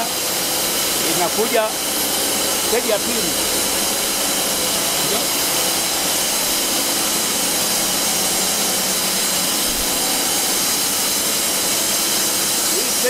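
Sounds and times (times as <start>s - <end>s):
machinery hissing: 0.0s - 13.0s.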